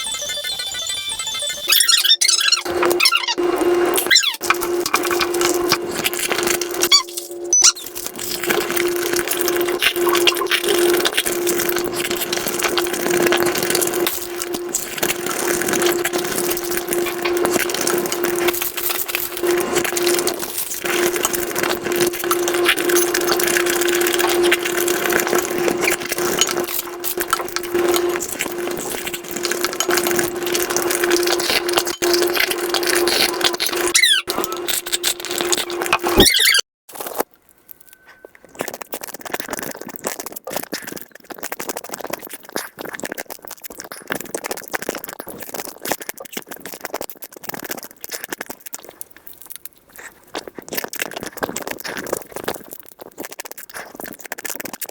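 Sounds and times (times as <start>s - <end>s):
rapid crunching and chewing: 2.0s - 54.9s
steady hum: 2.4s - 36.3s.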